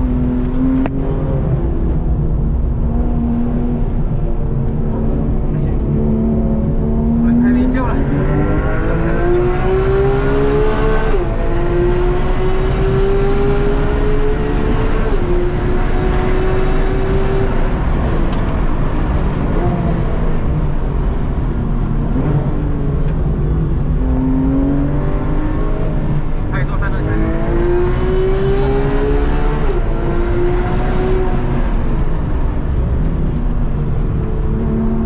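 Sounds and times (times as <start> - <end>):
car engine at full throttle: 0.0 - 35.0.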